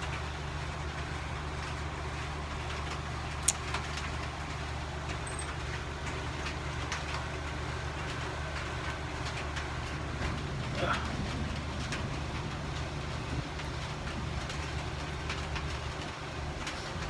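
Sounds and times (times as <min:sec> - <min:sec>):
low mechanical hum: 0:00.0 - 0:17.0
soft rain hissing: 0:00.0 - 0:17.0
sharp click: 0:03.4 - 0:03.7.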